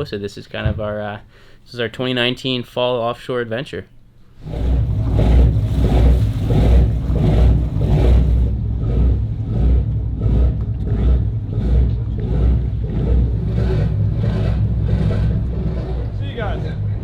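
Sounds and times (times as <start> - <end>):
boat engine drone: 4.4 - 17.0.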